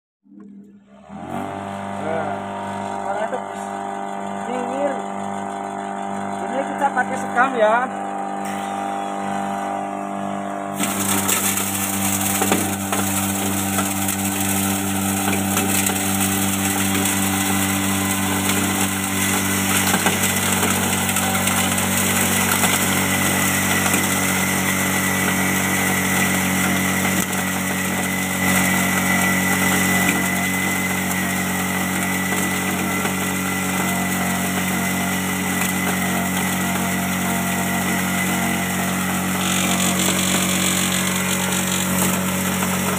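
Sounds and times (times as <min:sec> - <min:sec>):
electric motor hum: 0:00.3 - 0:42.9
hissing grind of rice husks: 0:10.7 - 0:42.9.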